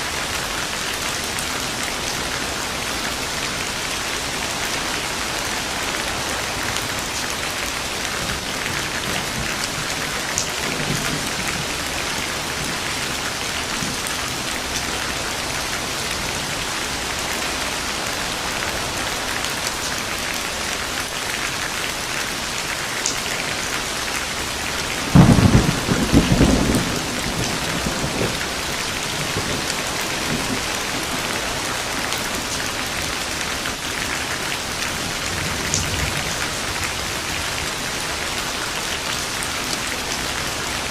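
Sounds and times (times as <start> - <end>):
heavy rain falling: 0.0 - 40.9
thunderclap and rumble: 5.6 - 16.4, 24.8 - 33.0, 35.0 - 37.6.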